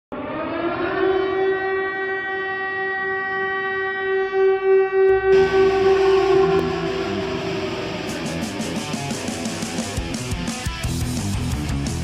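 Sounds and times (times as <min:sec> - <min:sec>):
long steady horn blast: 0:01.0 - 0:10.2.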